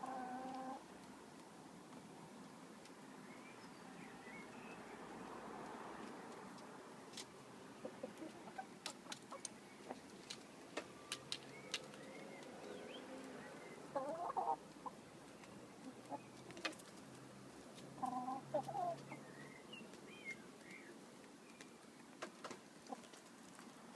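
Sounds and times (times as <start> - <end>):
chickens clucking: 0.0 - 0.8, 7.1 - 20.0, 21.9 - 23.7.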